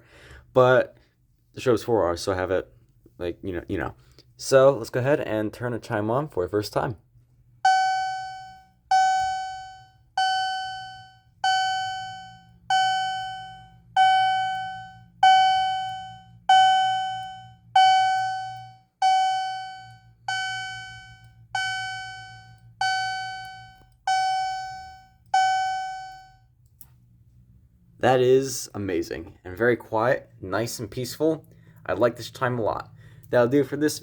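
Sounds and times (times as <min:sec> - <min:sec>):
fire alarm chime: 0:07.6 - 0:26.5.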